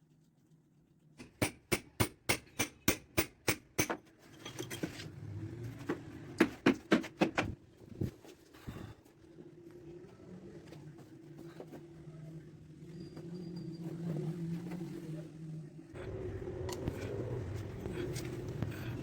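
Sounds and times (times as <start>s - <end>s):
hammer striking hard material: 1.2s - 4.0s.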